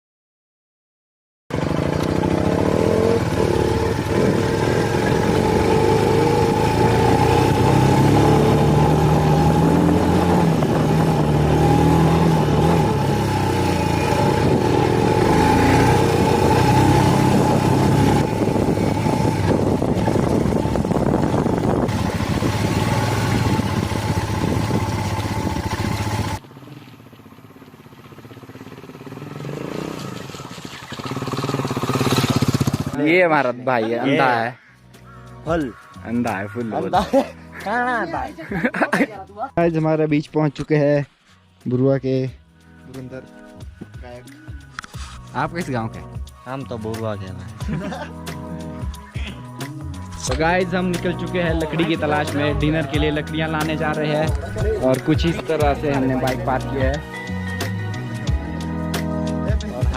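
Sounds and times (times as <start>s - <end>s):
motorcycle engine running: 1.5s - 33.2s, 50.0s - 59.9s.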